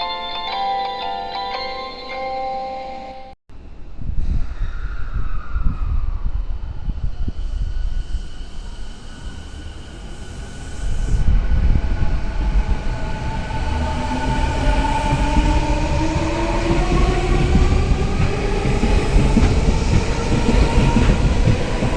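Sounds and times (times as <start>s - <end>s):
train running gear rumble: 11.2s - 21.9s.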